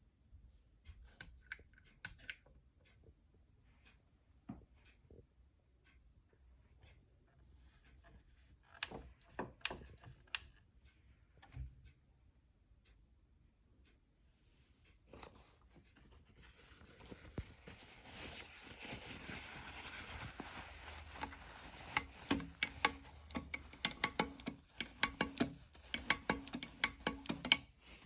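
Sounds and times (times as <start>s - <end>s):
sewing machine clicks and knocks: 8.6s - 10.6s, 21.1s - 28.0s
rustling handling noise: 15.0s - 28.0s.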